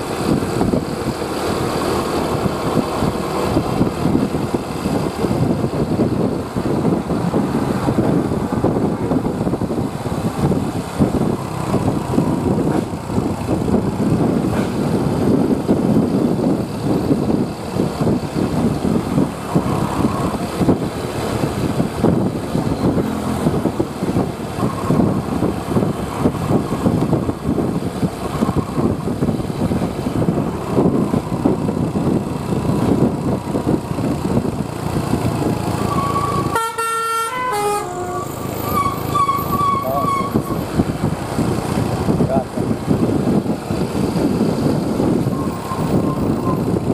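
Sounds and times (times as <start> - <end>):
bus engine and road noise: 0.0 - 46.9
multi-note bus horn: 36.0 - 40.4.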